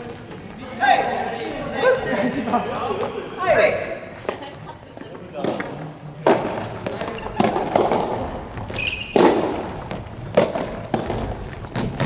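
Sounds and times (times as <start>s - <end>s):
rackets hitting ball: 5.0s - 12.0s
shoes squeaking on court: 6.4s - 12.0s.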